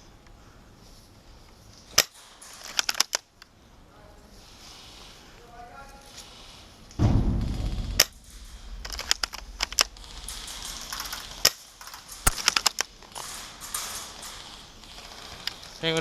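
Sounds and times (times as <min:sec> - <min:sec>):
airsoft guns firing: 0:12.3 - 0:12.6.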